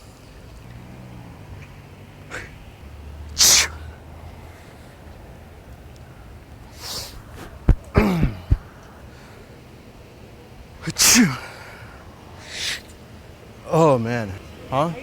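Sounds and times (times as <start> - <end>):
man fake sneezing: 2.3 - 2.6, 3.4 - 3.8, 6.8 - 8.7, 10.8 - 11.5, 12.5 - 12.8.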